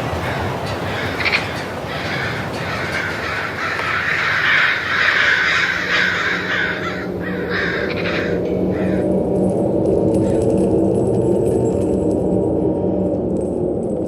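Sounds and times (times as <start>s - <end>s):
mass of birds chattering: 0.0s - 9.1s
steady low rumble: 0.0s - 14.0s.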